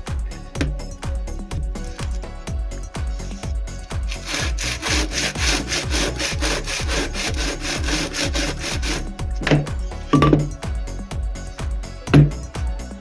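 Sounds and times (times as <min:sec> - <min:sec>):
music with a steady beat: 0:00.0 - 0:13.0
saw cutting through wood: 0:04.1 - 0:09.7.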